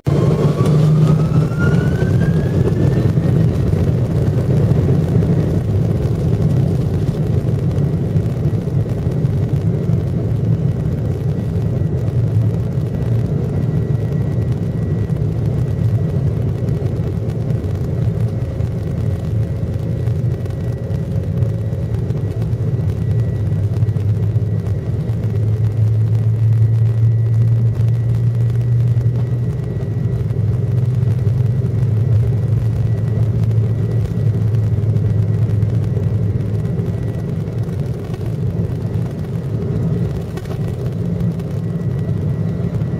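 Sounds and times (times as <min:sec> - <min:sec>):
faint high whine: 0:00.0 - 0:42.9
jet engines rumbling in cabin: 0:00.0 - 0:42.9.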